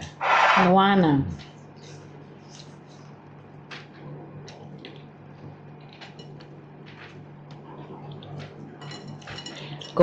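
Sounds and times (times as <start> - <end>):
cutlery clinking on plates: 8.8 - 10.0.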